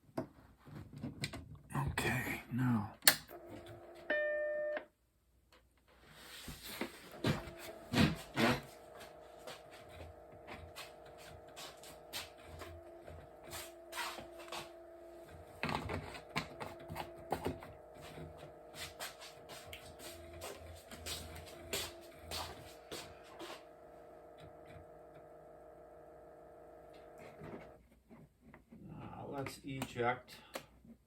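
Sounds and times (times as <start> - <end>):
floppy drive motor hum: 3.1 - 4.8, 7.0 - 27.8.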